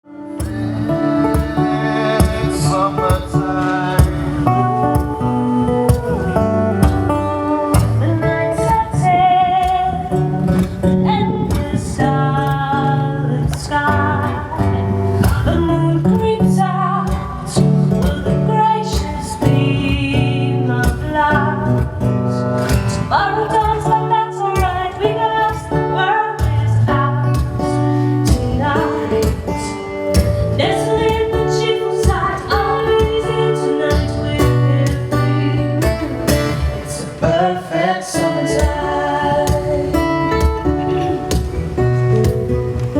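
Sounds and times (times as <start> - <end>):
person singing: 0.0 - 42.9
live band playing: 0.1 - 16.3, 17.1 - 42.9.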